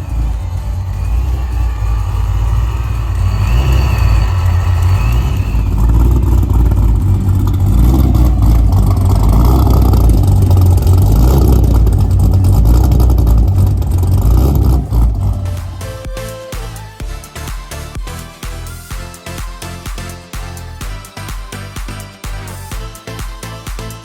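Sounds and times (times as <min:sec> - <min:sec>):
car engine rumbling: 0:00.0 - 0:17.1.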